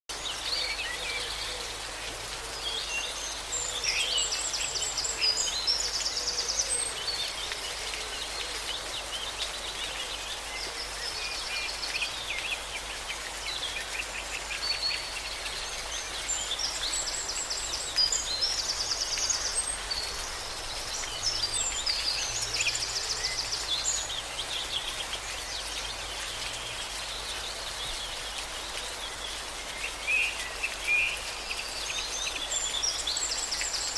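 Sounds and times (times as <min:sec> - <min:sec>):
songbirds trilling and chirping: 0:00.1 - 0:33.9
waterfall rushing: 0:00.1 - 0:33.9.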